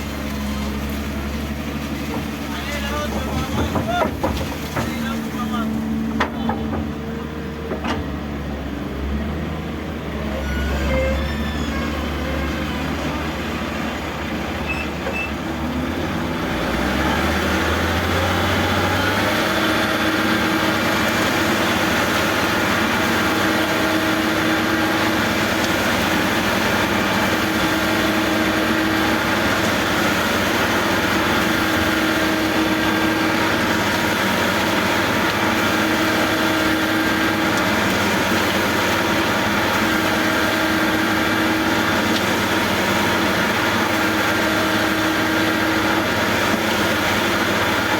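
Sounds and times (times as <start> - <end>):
construction machinery engine humming: 0.0 - 47.9.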